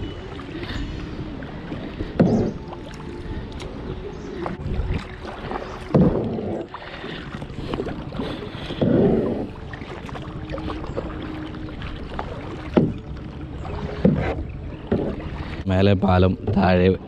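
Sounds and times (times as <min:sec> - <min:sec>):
paddle strokes in river water: 0:00.0 - 0:17.0.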